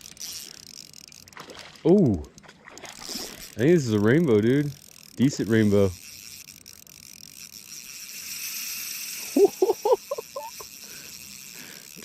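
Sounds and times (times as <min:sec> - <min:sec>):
fishing reel drag screaming: 0:00.0 - 0:12.0.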